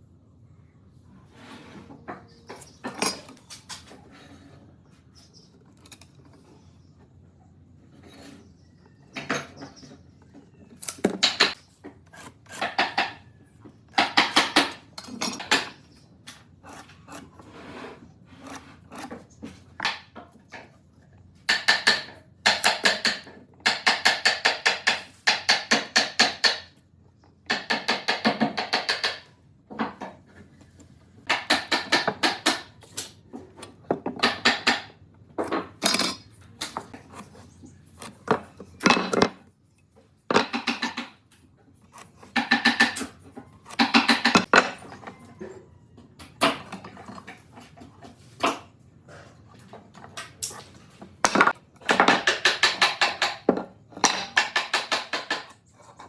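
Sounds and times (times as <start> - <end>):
hand tool rasping wood: 16.5 - 20.0, 41.8 - 44.5.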